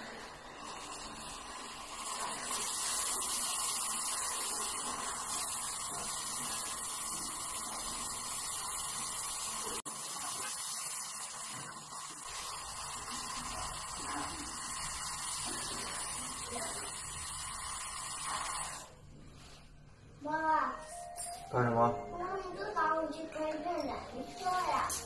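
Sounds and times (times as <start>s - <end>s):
torch flame hissing: 0.0s - 19.1s.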